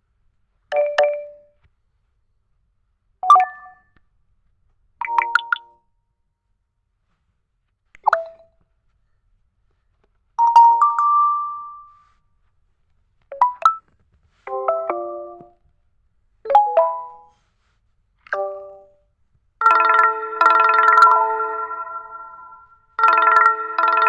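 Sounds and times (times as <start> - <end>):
phone alert chimes: 19.6 - 24.0.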